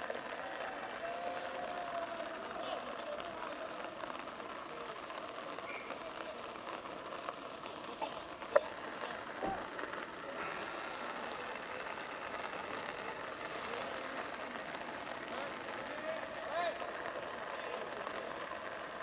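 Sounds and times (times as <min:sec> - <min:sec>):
outdoor background noise: 0:00.0 - 0:19.0
distant players calling: 0:00.2 - 0:18.5.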